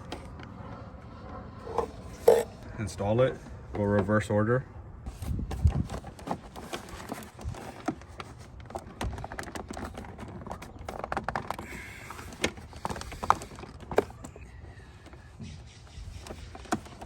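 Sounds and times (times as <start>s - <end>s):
plastic duct clicking and rattling: 5.2s - 15.3s, 16.0s - 17.0s.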